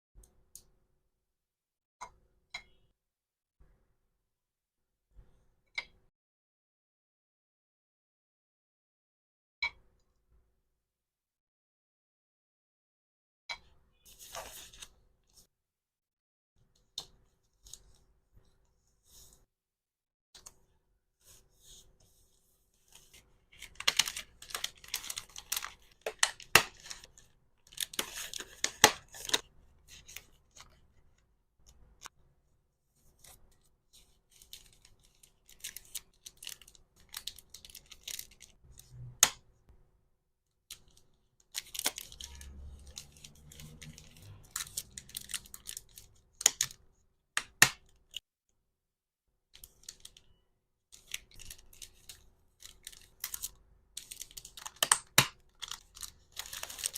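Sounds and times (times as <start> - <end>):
packaging rustling and crinkling: 22.9 - 30.8, 51.0 - 54.8, 55.4 - 56.9.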